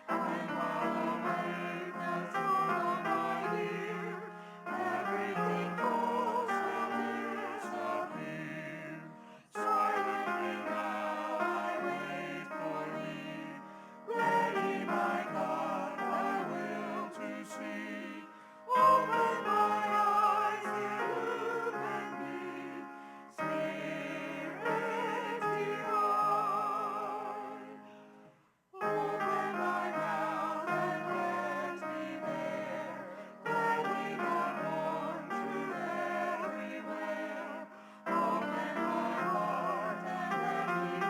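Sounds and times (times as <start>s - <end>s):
person singing with vibrato: 0.0s - 23.2s, 24.1s - 28.0s.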